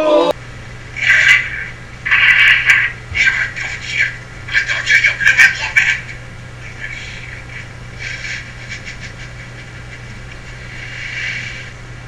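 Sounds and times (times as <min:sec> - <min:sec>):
steady low hum: 0:00.0 - 0:12.0
hissing bursts: 0:10.5 - 0:11.8.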